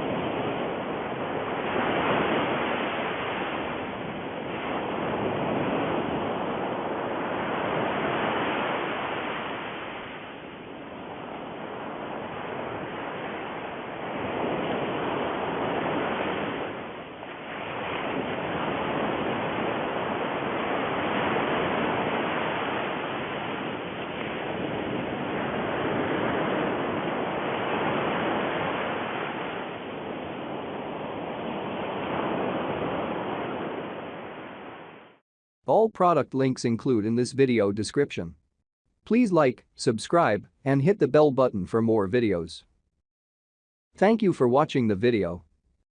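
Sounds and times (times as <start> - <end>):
rushing surf: 0.0 - 35.2.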